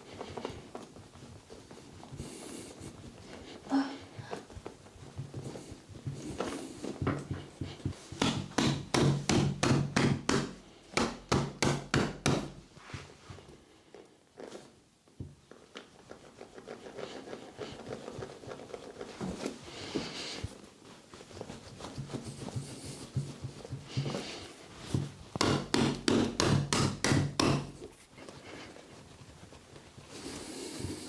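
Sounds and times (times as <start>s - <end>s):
percussive knocks on a body: 6.9s - 12.6s, 25.0s - 27.8s.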